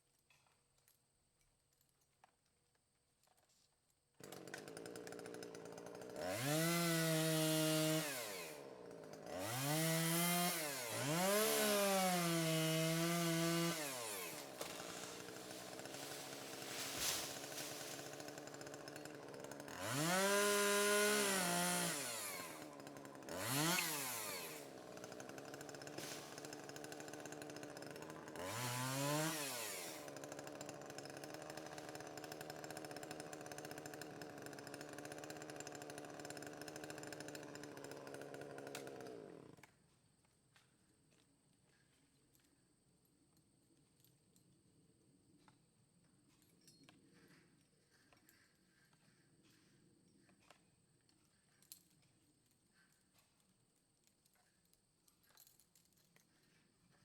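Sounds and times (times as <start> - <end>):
chainsaw revving: 4.2 - 39.7.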